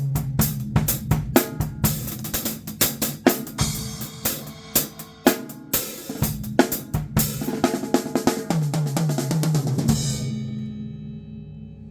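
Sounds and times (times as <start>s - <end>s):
drum kit solo: 0.0s - 11.9s
cymbal crash ringing: 10.0s - 11.9s.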